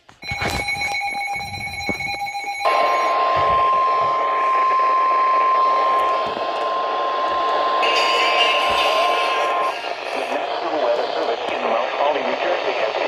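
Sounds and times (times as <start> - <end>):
steady high alarm tone: 0.0 - 11.8
radio static: 2.7 - 13.0
electronic alert tone with clicks: 7.8 - 10.4.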